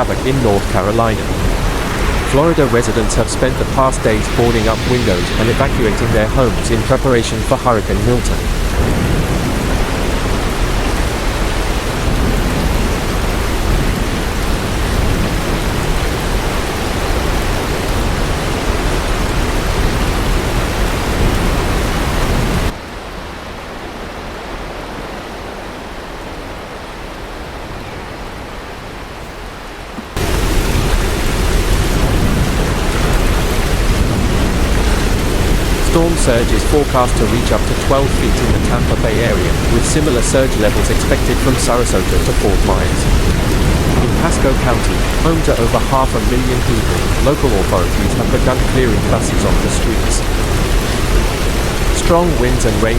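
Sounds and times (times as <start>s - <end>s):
heavy rain: 0.0s - 52.9s
hurricane wind: 0.0s - 52.9s.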